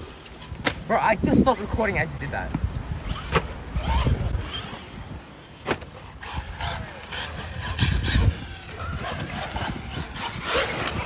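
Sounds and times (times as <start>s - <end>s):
rc car motor whining: 3.0s - 11.0s.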